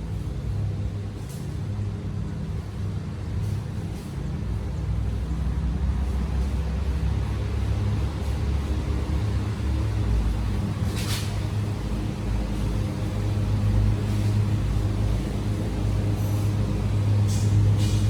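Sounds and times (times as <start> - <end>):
low mechanical hum: 0.0 - 18.0
short hissing rustles: 10.8 - 11.6, 17.2 - 18.0.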